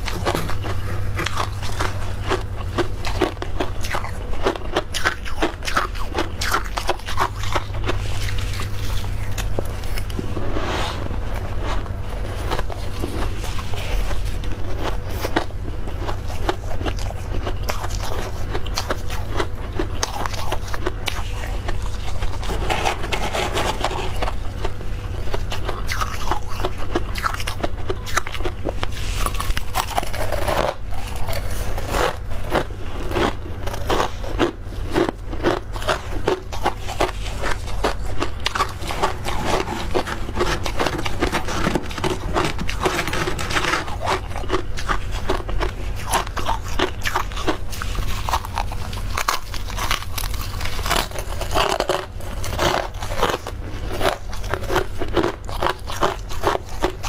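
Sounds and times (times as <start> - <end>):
frost crunching while chewed: 0.0 - 57.0.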